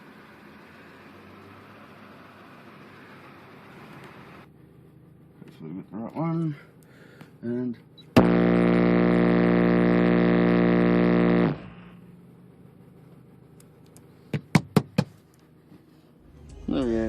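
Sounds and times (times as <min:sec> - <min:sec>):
subwoofer bass tone: 0:08.2 - 0:12.0.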